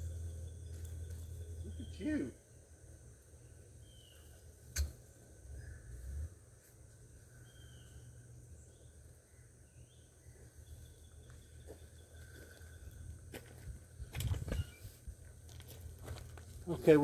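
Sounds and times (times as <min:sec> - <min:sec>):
faint bird chirps: 0:00.0 - 0:02.4, 0:03.4 - 0:06.4, 0:07.2 - 0:13.1
low steady hum: 0:00.0 - 0:17.0.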